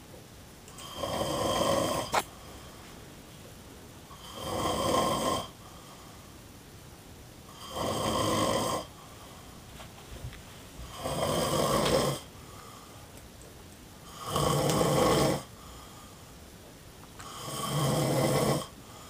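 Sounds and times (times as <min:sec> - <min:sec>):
quiet breathing: 0:00.7 - 0:06.6, 0:07.4 - 0:19.0
man snoring: 0:00.8 - 0:02.2, 0:04.1 - 0:05.6, 0:07.5 - 0:09.0, 0:10.8 - 0:12.3, 0:14.0 - 0:15.6, 0:17.2 - 0:19.0.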